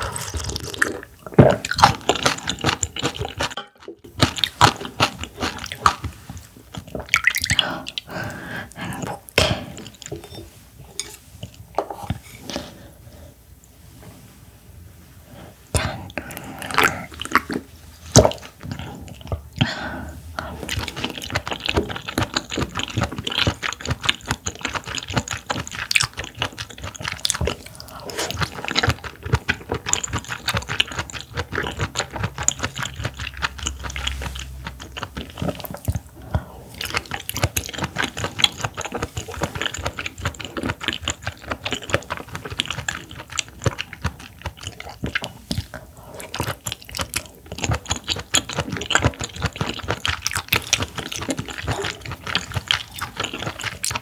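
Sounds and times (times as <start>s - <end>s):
wet crisp chewing: 0.0s - 10.1s, 20.4s - 54.0s.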